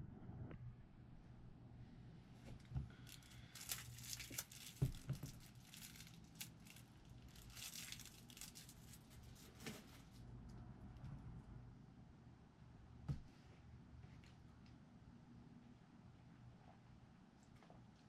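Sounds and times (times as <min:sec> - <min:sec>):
low steady hum: 0:00.0 - 0:18.0
rustling and crinkling: 0:02.4 - 0:10.3.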